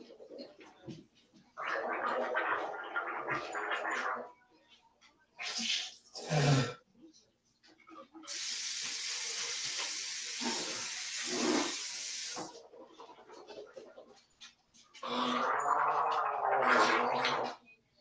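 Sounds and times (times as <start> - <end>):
person gargling: 1.6 - 4.3, 15.0 - 17.6.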